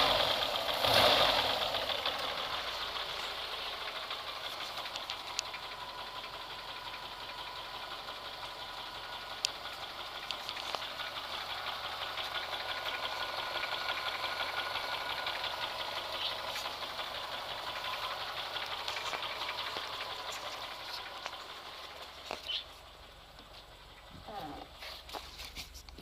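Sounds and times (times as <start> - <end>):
car engine ticking clatter: 0.0 - 26.0.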